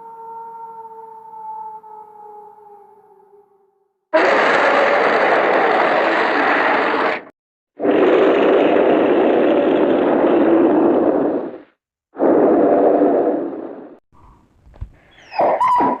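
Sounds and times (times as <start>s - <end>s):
monster growl-roar: 4.2s - 13.8s.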